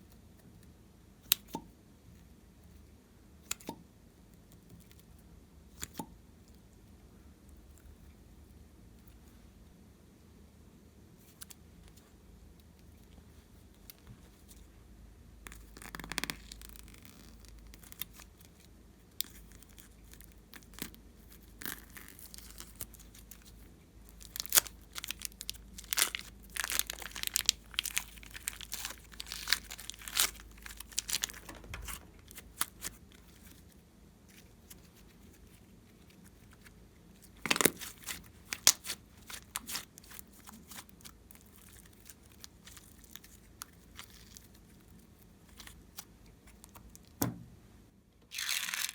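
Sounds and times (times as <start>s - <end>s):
slime squished by hand: 24.2s - 33.6s, 37.3s - 44.7s, 48.3s - 48.9s.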